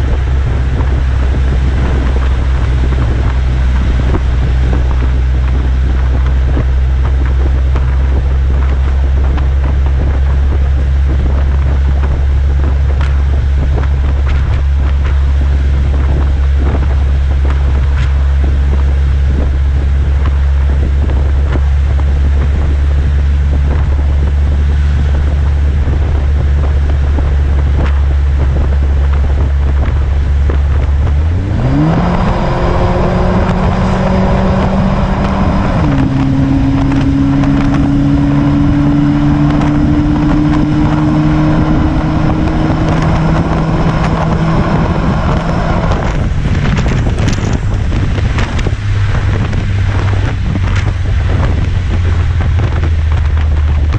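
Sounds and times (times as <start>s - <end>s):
car exhaust droning and revving: 0.0s - 53.9s
wind buffeting microphone: 0.0s - 53.9s.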